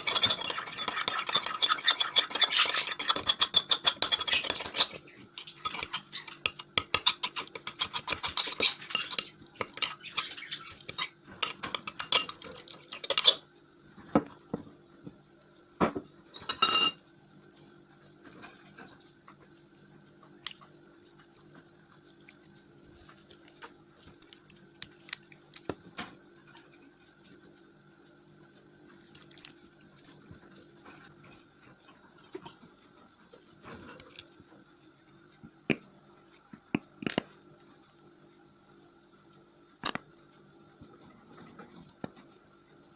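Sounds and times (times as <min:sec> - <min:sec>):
utensil stirring slime in bowl: 0:00.0 - 0:13.5, 0:18.0 - 0:37.4
faint steady hum: 0:00.0 - 0:42.9.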